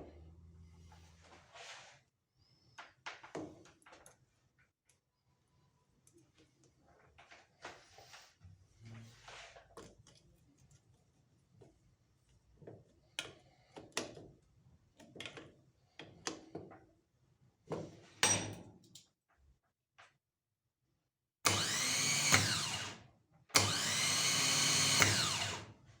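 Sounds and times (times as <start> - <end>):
starter motor whirring: 21.5 - 23.0, 23.6 - 25.7.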